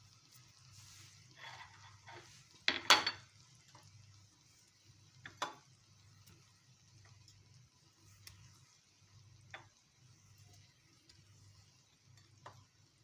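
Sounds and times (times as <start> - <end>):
spoon scraping and knocking a pan: 1.2 - 3.3, 5.2 - 5.7.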